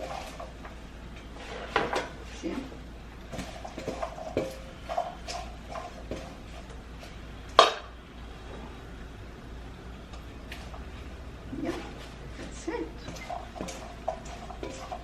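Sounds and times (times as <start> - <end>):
utensils clinking on dishes: 3.3 - 6.7, 11.6 - 15.0.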